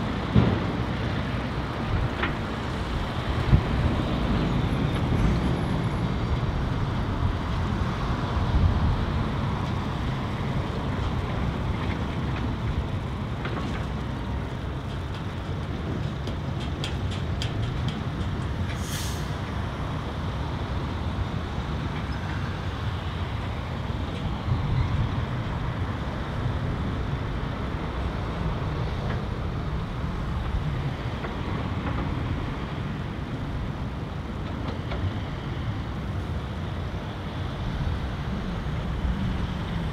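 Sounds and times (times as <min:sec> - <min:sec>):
diesel engines running: 0:00.0 - 0:39.9
air brakes hiss: 0:18.7 - 0:19.5.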